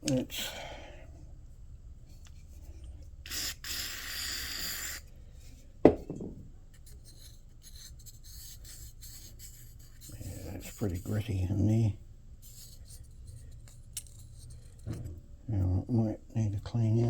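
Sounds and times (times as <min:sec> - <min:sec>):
aerosol spray: 0:03.3 - 0:05.0
sharp knock: 0:05.9 - 0:06.4
small metal parts scraping: 0:12.8 - 0:15.1.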